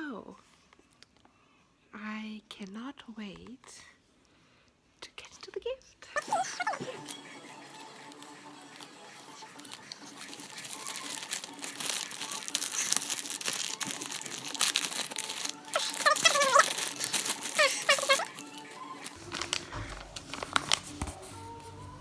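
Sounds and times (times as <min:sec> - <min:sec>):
wrapping paper crinkling and tearing: 0:06.2 - 0:22.0.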